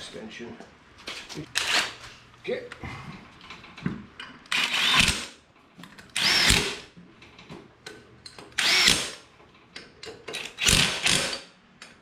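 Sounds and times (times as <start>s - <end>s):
impact gun whirring: 4.5s - 5.4s, 6.2s - 6.9s, 8.6s - 9.2s.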